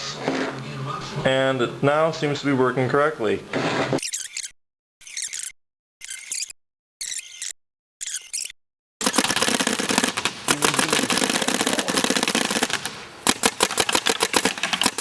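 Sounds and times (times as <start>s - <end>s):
paintball gun firing: 9.0s - 15.0s.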